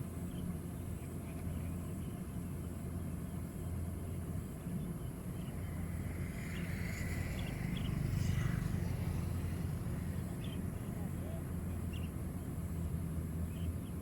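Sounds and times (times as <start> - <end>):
combine harvester engine humming: 3.2 - 14.0.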